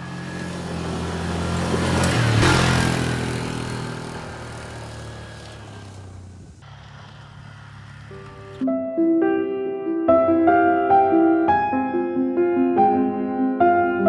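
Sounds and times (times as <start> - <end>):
vehicle engine passing: 0.0 - 8.7.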